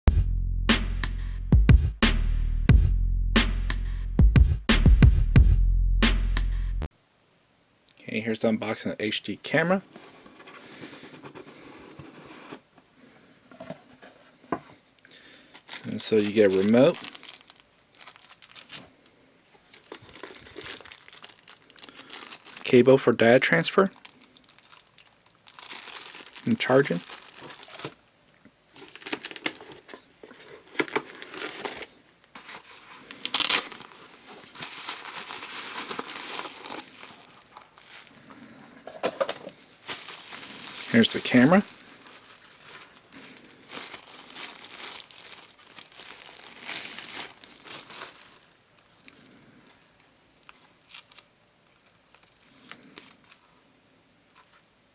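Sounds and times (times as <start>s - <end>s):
packaging rubbing and scraping: 9.9s - 12.7s, 15.6s - 18.9s, 19.7s - 22.9s, 23.9s - 28.0s, 28.7s - 38.6s, 39.5s - 48.5s
plastic wrap crinkling: 15.4s - 28.0s, 28.7s - 48.8s, 50.4s - 53.6s.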